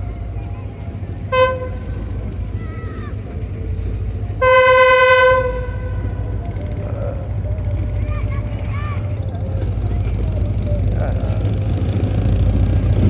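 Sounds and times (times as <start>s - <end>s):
train horn blast: 1.2s - 2.5s, 4.3s - 7.8s.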